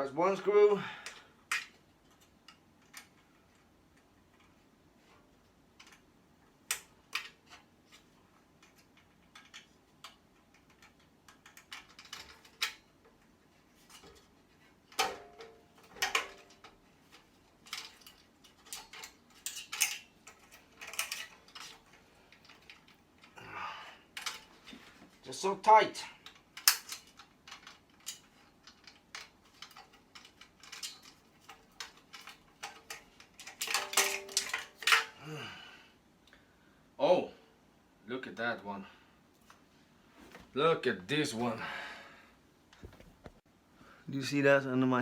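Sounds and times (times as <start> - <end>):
screwdriver and small parts clicking: 1.0 - 4.6, 5.8 - 6.1, 6.7 - 14.3, 14.9 - 23.4, 24.2 - 24.6, 26.2 - 35.2.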